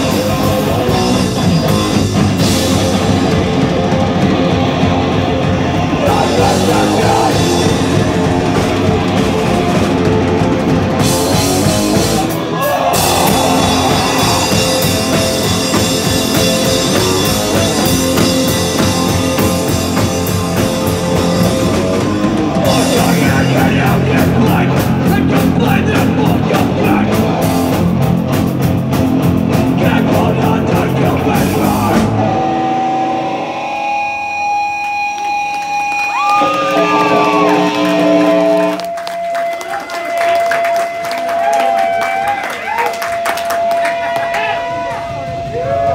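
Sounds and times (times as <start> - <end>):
punk band playing live: 0.0 - 45.9
ringing guitar tones: 31.7 - 41.4.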